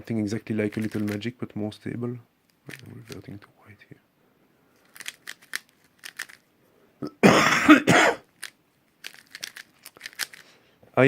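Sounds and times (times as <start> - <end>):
plastic puzzle cube clicking: 0.7 - 1.2, 2.5 - 3.3, 4.8 - 6.4, 8.3 - 10.5
person coughing: 7.0 - 8.3.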